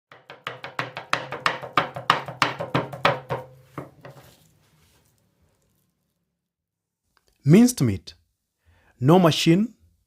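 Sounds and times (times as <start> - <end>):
knife chopping on wooden board: 0.1 - 4.4.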